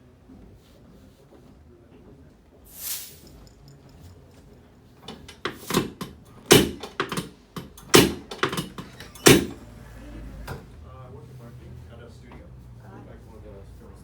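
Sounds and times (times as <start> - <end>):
sharp knocks and clicks: 5.1 - 9.6.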